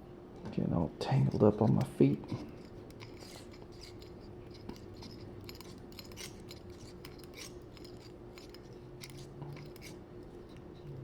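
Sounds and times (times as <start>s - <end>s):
faint steady hum: 0.0s - 11.0s
fishing line rubbing on reel spool: 2.3s - 10.8s.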